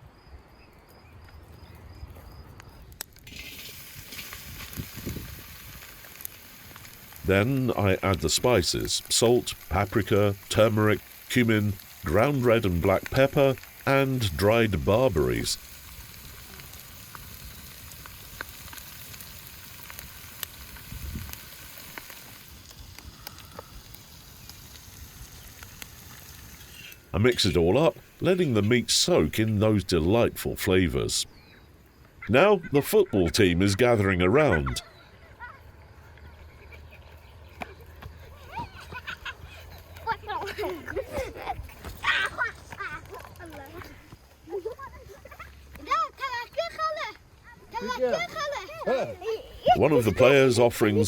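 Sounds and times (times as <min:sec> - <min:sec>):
meat sizzling in fat: 0:03.1 - 0:31.6, 0:47.8 - 0:51.0.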